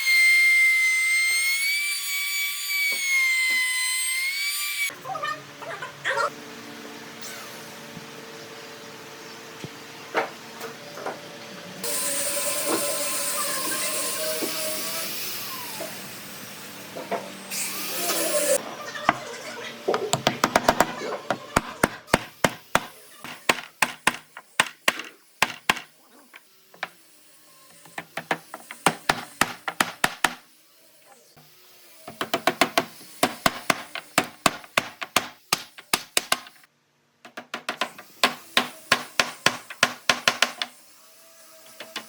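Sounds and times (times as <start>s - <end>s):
knocks on wood: 19.9s - 25.9s.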